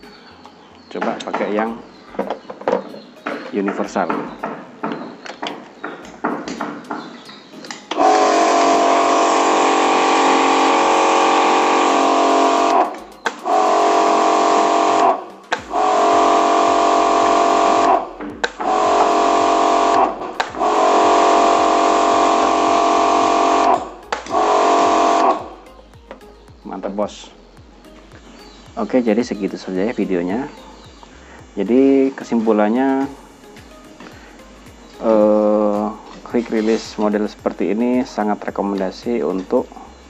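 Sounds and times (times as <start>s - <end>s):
pressure washer motor running: 8.0s - 25.6s
water spray hissing: 8.0s - 25.9s.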